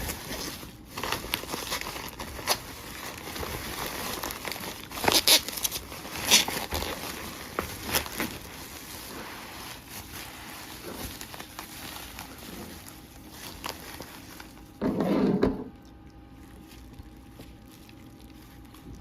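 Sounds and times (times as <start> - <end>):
package clicks and rustles: 0.0 - 9.1, 9.8 - 14.8
dull rustle: 0.0 - 14.8.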